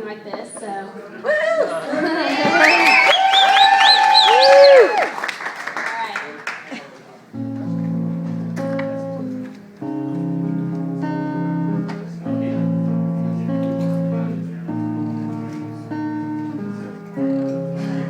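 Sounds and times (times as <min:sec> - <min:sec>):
acoustic guitar strumming: 0:07.4 - 0:18.0.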